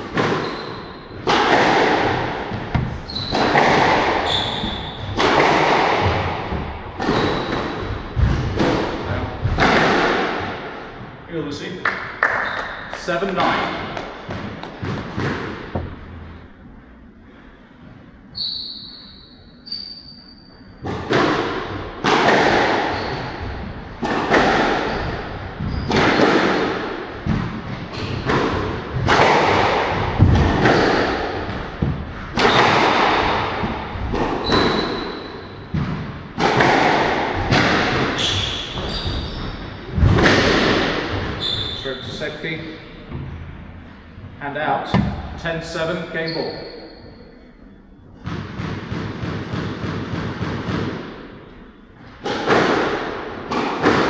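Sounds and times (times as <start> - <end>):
squash ball impacts: 0.0 - 11.2, 11.9 - 17.7, 20.8 - 46.2, 48.1 - 54.0
shoes squeaking on court: 0.4 - 1.6, 2.6 - 5.3, 12.4 - 17.0, 46.2 - 47.2.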